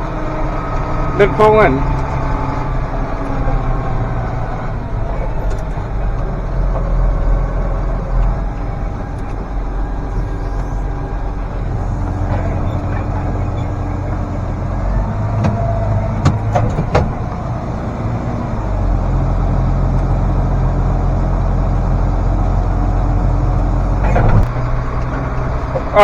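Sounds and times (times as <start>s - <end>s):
tractor diesel engine running: 0.0s - 26.0s.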